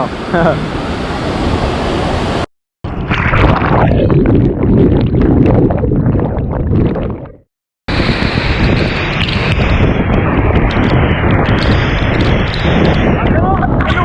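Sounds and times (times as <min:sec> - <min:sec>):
wind buffeting microphone: 0:07.9 - 0:14.0.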